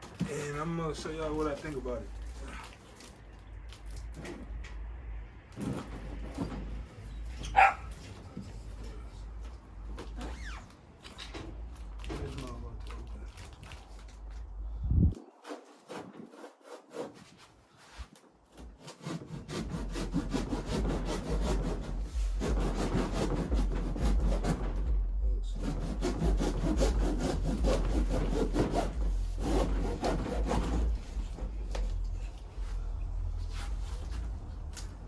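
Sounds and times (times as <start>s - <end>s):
low rumble: 14.1s - 15.2s, 20.9s - 35.0s
rhythmic rubbing strokes: 19.0s - 34.7s.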